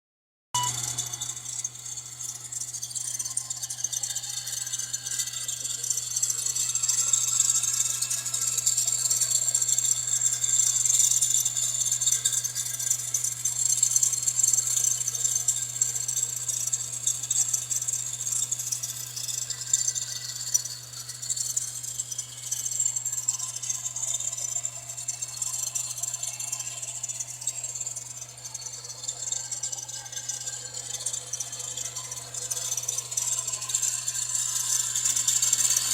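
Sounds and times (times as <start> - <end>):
metallic rattling chatter: 23.5 - 35.9.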